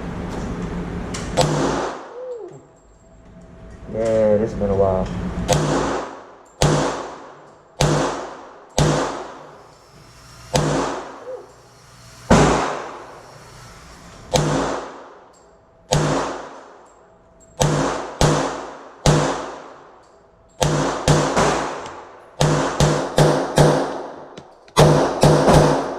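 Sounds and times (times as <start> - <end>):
gunshots with echoing tail: 1.4 - 2.2, 5.5 - 9.6, 10.5 - 11.2, 12.3 - 13.1, 14.3 - 15.3, 15.9 - 16.8, 17.6 - 20.0, 20.6 - 25.9.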